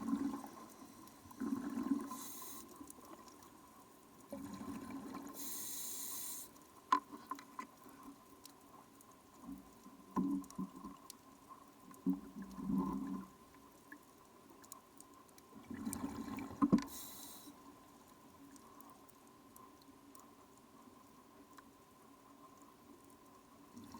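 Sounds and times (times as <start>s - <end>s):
exhaled bubbles rumbling: 0.0s - 2.2s, 4.3s - 5.3s
faint clicks: 0.4s - 4.4s, 5.2s - 23.9s
diver inhaling through regulator: 1.9s - 2.7s, 5.4s - 6.5s, 16.9s - 17.6s.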